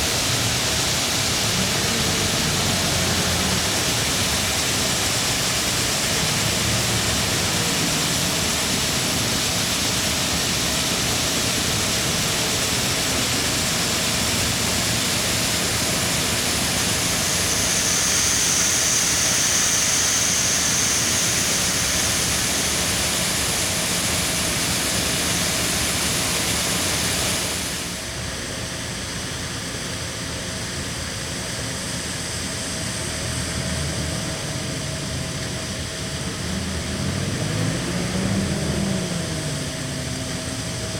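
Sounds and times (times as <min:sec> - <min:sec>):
harvesting machinery hissing: 0:00.0 - 0:28.1
engine hum: 0:33.4 - 0:40.9.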